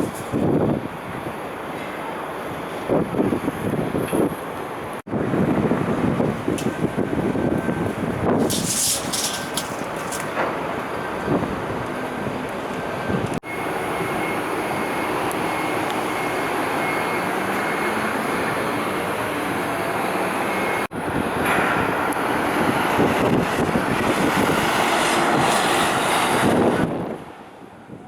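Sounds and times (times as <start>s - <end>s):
strong wind on microphone: 0.0s - 1.5s, 2.5s - 10.2s, 20.9s - 28.0s
vehicle noise: 0.0s - 1.7s, 5.1s - 27.8s.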